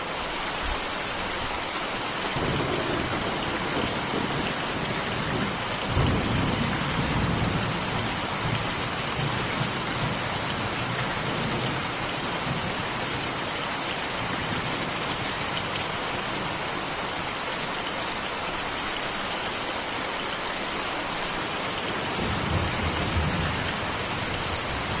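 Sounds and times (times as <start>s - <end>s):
heavy rain falling: 0.0s - 25.0s.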